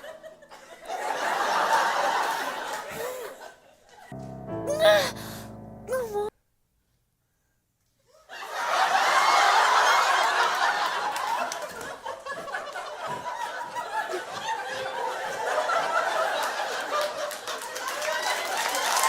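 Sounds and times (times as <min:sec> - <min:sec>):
audience laughing: 0:00.0 - 0:04.1, 0:08.4 - 0:18.9.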